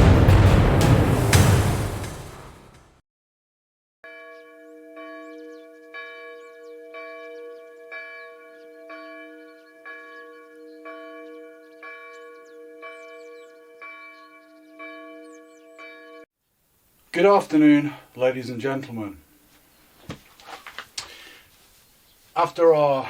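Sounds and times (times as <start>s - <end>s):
bell tolling: 0.0s - 2.9s.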